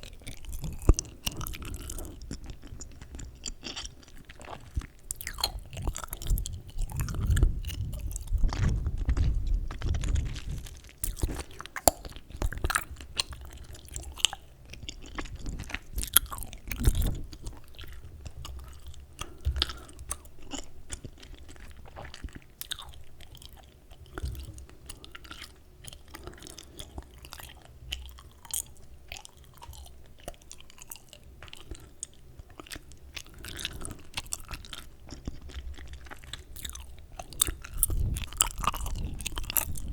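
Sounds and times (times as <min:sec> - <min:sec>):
gum chewing smacks and clicks: 0:00.0 - 0:39.9
low chewing thumps: 0:00.0 - 0:39.9.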